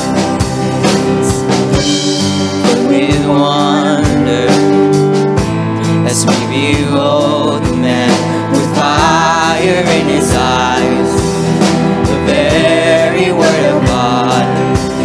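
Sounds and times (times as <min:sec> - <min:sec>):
held chords: 0:00.0 - 0:15.0
person singing long notes: 0:02.6 - 0:05.1.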